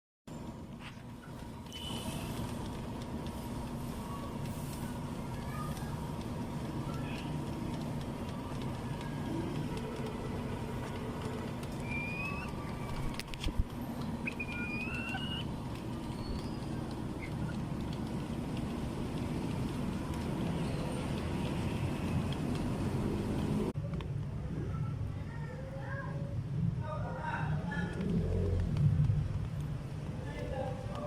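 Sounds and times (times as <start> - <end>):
low mechanical hum: 0.3 - 31.0
chickens calling: 9.3 - 13.2, 14.0 - 18.4.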